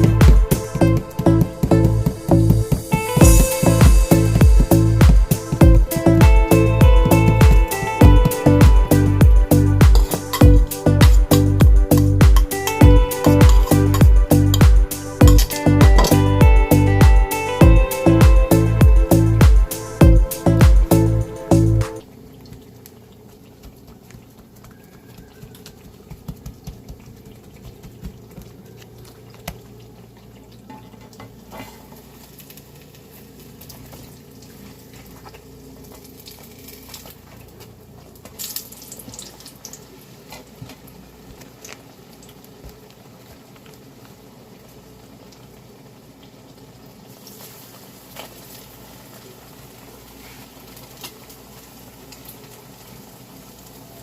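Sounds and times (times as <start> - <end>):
food bubbling on a stove: 22.0 - 54.0.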